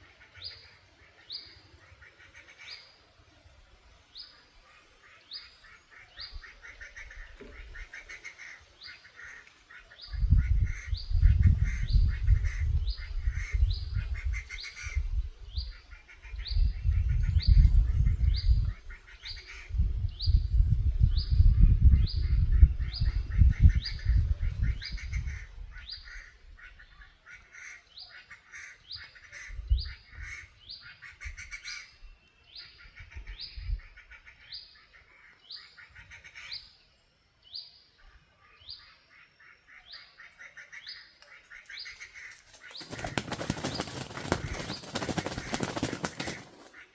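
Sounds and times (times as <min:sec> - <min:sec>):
low microphone rumble: 0:19.7 - 0:25.8.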